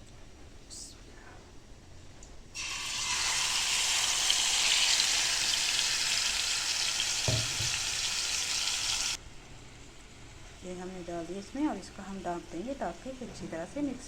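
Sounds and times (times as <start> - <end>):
meat sizzling in hot oil: 2.6 - 9.2
short low knock: 7.3 - 7.8.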